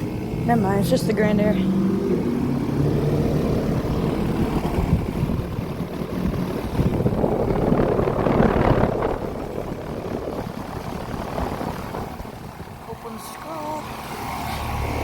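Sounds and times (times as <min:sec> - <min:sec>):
air conditioner fan whoosh: 0:01.6 - 0:15.0.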